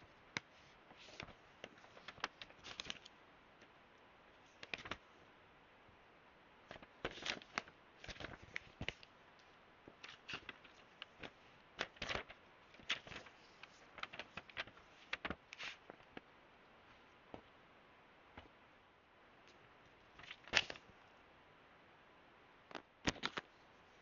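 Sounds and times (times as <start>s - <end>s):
packaging rustling: 10.0s - 16.2s.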